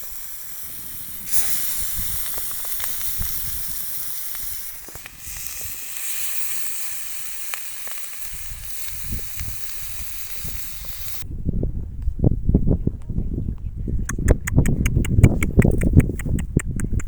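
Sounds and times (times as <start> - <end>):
chicken sizzling on hot stone: 0.0 - 11.2.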